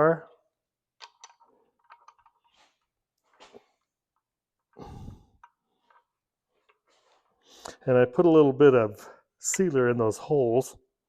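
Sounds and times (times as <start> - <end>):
person breathing out: 4.8 - 5.5.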